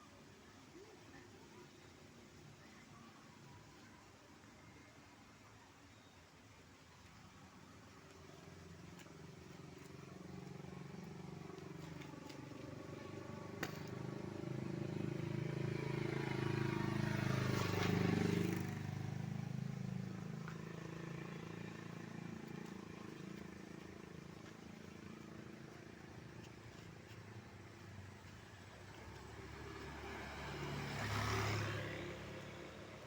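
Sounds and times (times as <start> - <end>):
vehicle engine passing by: 9.5 - 33.0.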